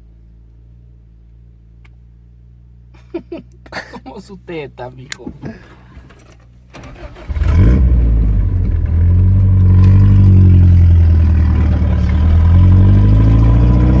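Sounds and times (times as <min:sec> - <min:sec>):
vehicle engine running loudly: 0:07.4 - 0:14.0.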